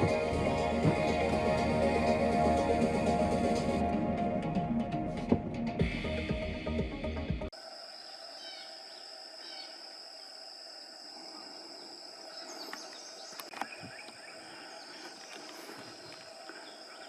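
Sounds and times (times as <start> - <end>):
high insect drone: 7.5 - 17.0.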